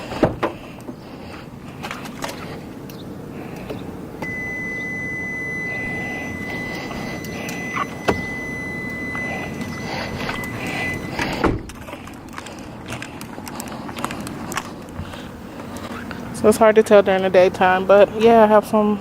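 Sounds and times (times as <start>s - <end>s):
high-pitched electronic tone: 4.2s - 11.2s.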